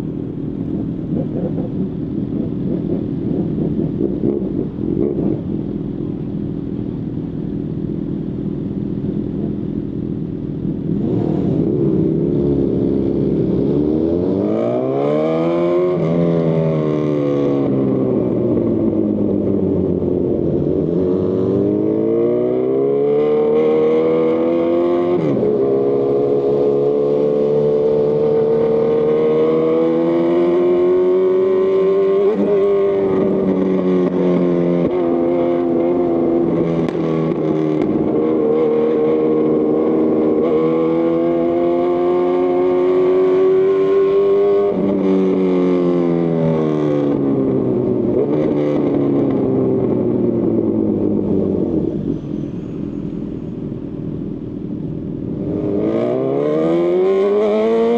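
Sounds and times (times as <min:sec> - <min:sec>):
motorcycle engine revving: 0:10.8 - 0:52.1.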